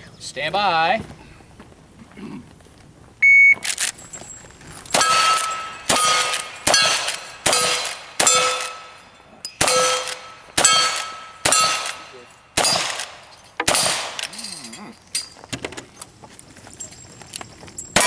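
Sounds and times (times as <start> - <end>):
steel targets clanging: 3.8 - 15.5
gunshots: 4.9 - 9.0, 9.6 - 14.4.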